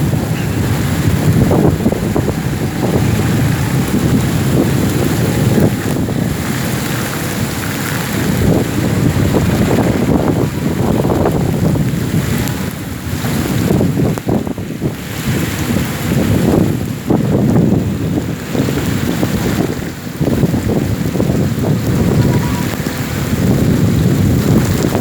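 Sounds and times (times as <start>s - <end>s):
heavy rain: 0.0s - 25.0s
wind buffeting microphone: 0.0s - 25.0s.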